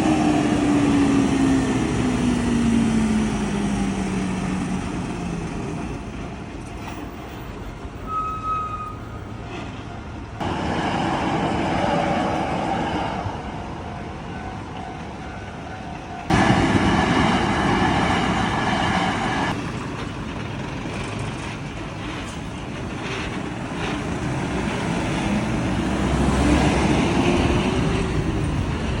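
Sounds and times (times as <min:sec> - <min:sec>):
loud steady noise: 0:16.3 - 0:21.7
truck diesel engine running: 0:16.3 - 0:29.0.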